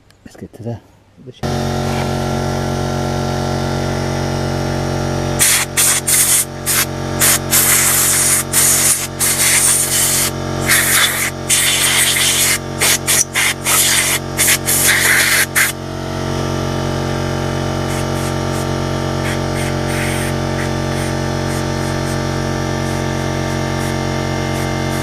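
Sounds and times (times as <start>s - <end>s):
steady hum: 1.0s - 25.0s
compressed air hissing bursts: 5.4s - 15.8s, 17.8s - 25.0s.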